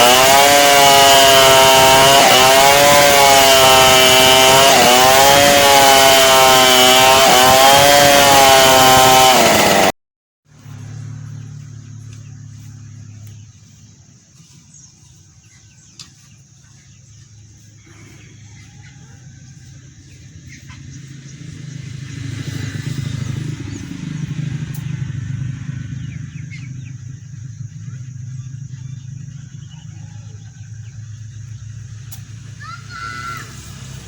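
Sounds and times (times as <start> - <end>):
chainsaw engine idling: 0.0 - 9.9.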